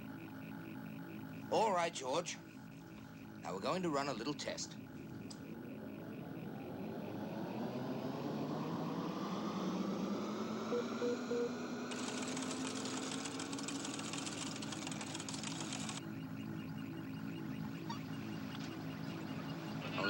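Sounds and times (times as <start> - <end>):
electronic hum rising in pitch: 0.0 - 20.0
short electronic beeps: 2.4 - 7.9, 10.7 - 13.1, 13.8 - 20.0.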